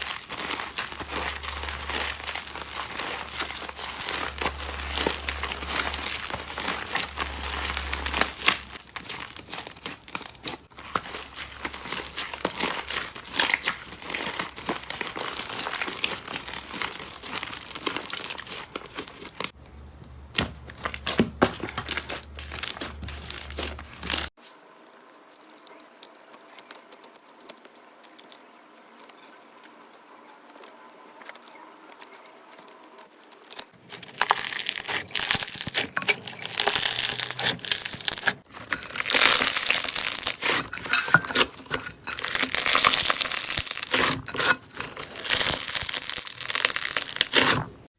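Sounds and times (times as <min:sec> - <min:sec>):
slime crackling and popping: 0:00.0 - 0:19.6, 0:20.4 - 0:24.3, 0:33.9 - 0:47.8.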